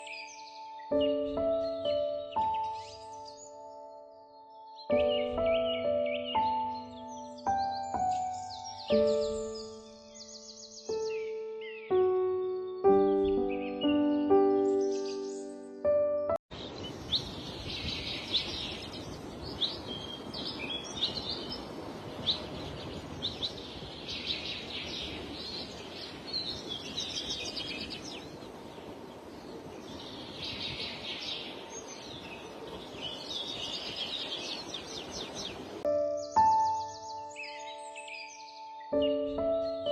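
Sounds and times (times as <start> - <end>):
music: 0.0 - 16.4, 35.8 - 39.9
birds chirping and trilling: 0.0 - 39.9
outdoor background hiss: 4.6 - 15.5, 16.5 - 39.9.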